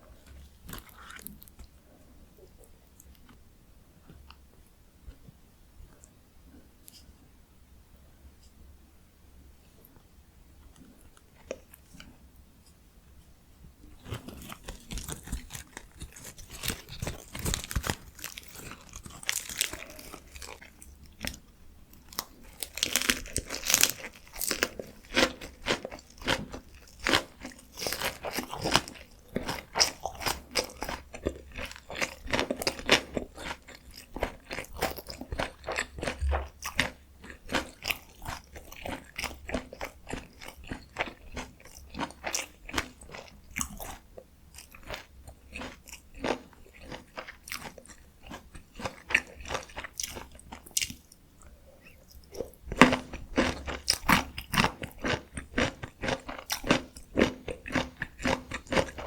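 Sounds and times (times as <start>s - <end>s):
chewing and wet mouth sounds: 0.2s - 1.8s, 13.9s - 59.0s.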